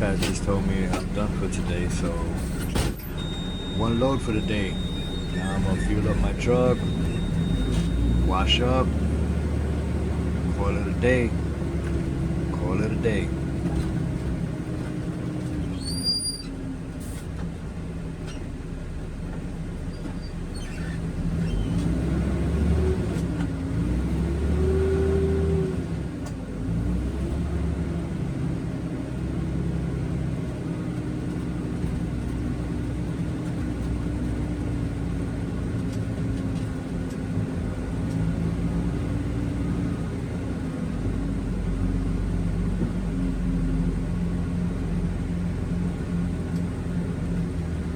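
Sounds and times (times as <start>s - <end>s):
truck diesel engine running: 0.0s - 47.9s
high beep: 2.0s - 8.7s.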